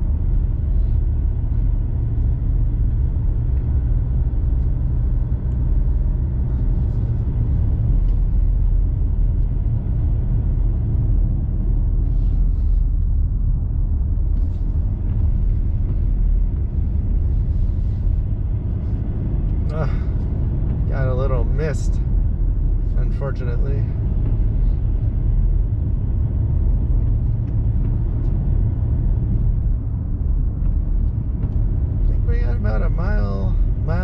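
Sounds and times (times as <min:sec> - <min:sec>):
diesel engine rumble: 0:00.0 - 0:34.0.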